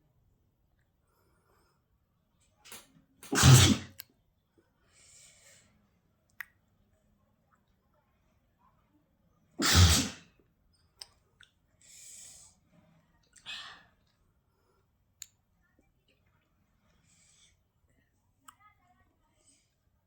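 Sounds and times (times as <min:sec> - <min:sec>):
soft breathing: 0:01.0 - 0:02.1, 0:04.6 - 0:06.0, 0:11.8 - 0:15.1, 0:16.6 - 0:17.9
person sneezing: 0:03.2 - 0:04.0, 0:09.6 - 0:10.3.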